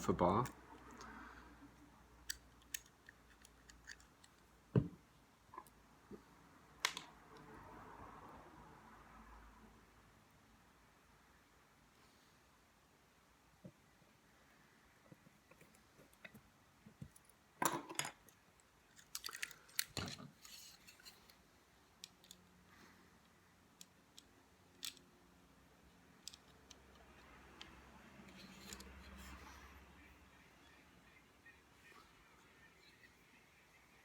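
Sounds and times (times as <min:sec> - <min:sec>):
faint low hum: 0:00.0 - 0:34.0
small parts clicking and scraping: 0:01.7 - 0:04.6, 0:17.0 - 0:29.5.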